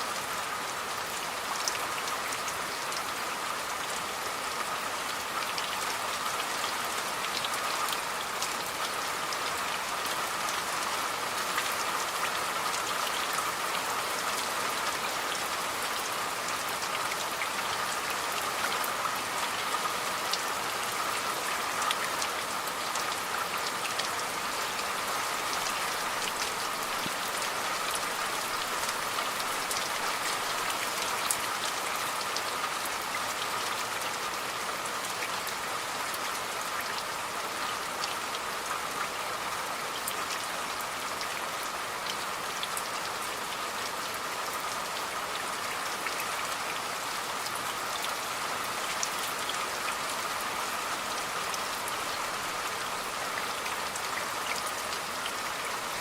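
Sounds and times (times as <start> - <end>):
steady rain falling: 0.0 - 56.0
raindrops ticking on a surface: 0.1 - 56.0.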